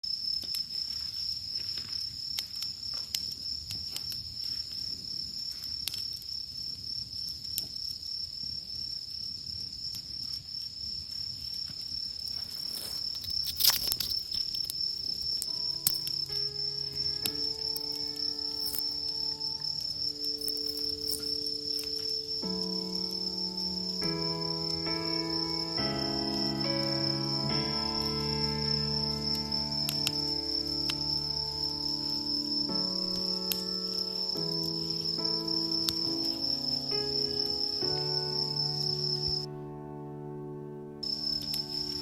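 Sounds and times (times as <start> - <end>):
insect trill: 0.0 - 39.5, 41.0 - 42.0
campfire crackling and popping: 11.6 - 24.1
soft music with held notes: 13.8 - 42.0.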